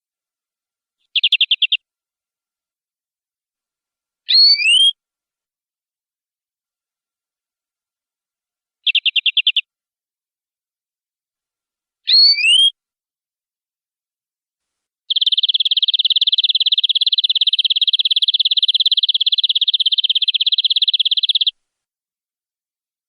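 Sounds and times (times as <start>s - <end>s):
canary singing: 1.1s - 1.8s, 4.3s - 5.0s, 8.8s - 9.7s, 12.1s - 12.8s, 15.1s - 21.6s.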